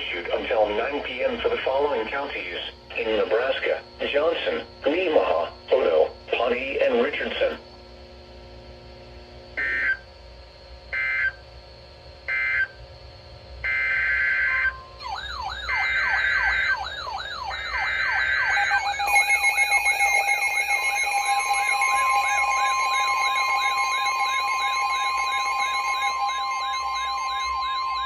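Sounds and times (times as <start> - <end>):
screeching data tone bursts: 0.0 - 7.6, 9.6 - 10.1, 13.6 - 28.0
rising and falling siren warble: 13.6 - 28.0
two-tone attention signal: 17.6 - 28.0.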